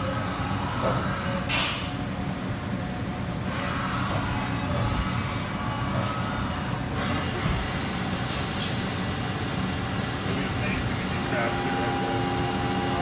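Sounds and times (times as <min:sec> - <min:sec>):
high machine whines: 0:03.5 - 0:13.0
machine hum: 0:09.1 - 0:13.0.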